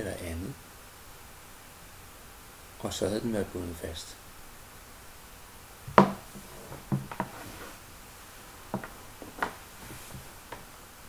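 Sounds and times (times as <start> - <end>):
faint steady hiss: 0.0 - 11.0
knocks and taps of handling: 5.9 - 7.4, 8.7 - 9.6.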